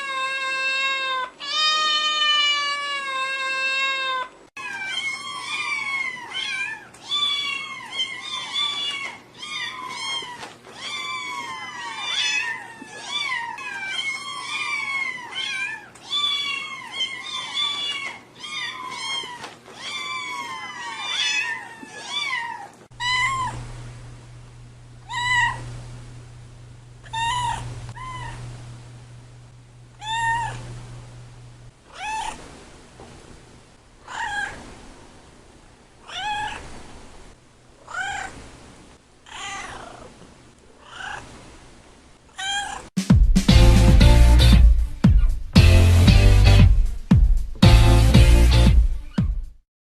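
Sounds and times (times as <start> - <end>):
cat meowing: 0.0 - 23.6, 25.0 - 25.6, 27.0 - 28.5, 30.0 - 30.7, 31.9 - 32.4, 34.1 - 34.6, 36.0 - 36.7, 37.9 - 38.4, 39.3 - 40.1, 42.3 - 42.9
low hum: 22.9 - 31.8.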